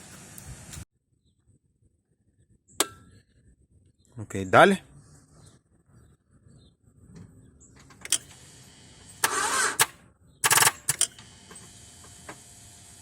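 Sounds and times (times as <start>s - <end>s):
car starter motor cranking: 8.0s - 13.0s
sharp clicks: 9.2s - 11.2s.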